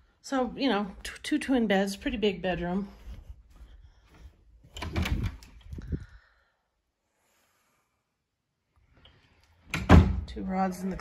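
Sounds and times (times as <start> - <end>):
closet door knocks and rattles: 4.7 - 5.5, 9.7 - 10.3.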